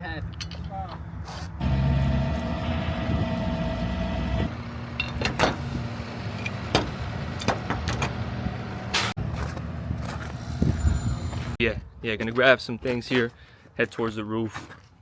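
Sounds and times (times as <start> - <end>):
van engine rumbling: 1.6 - 11.6.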